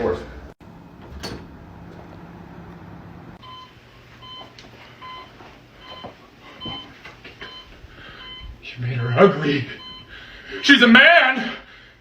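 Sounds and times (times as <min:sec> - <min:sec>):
patient monitor beeping: 0:03.4 - 0:10.9.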